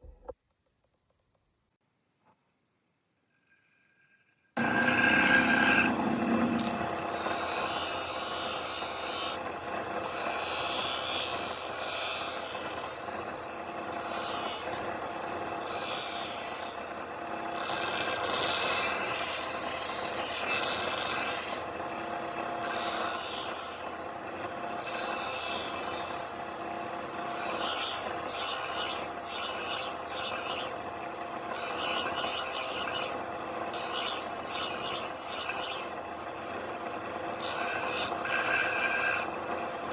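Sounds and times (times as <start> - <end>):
abrasive rubbing on knife: 4.6 - 7.4.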